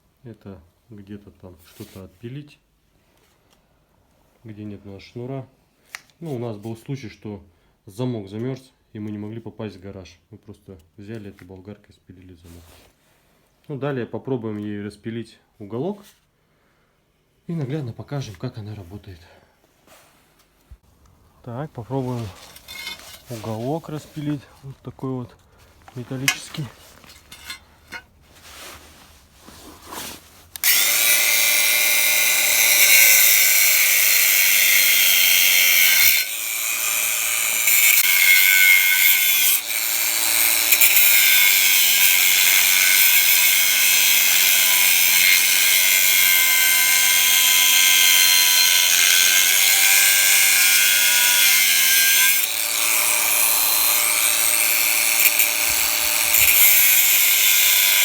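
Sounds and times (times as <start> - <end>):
angle grinder cutting steel: 21.6 - 24.5, 25.8 - 28.1, 30.6 - 58.0.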